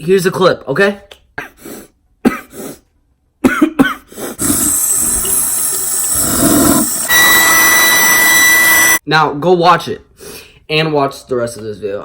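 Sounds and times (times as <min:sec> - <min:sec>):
man coughing and sputtering: 0:01.4 - 0:05.2
steady high tone: 0:04.4 - 0:09.0.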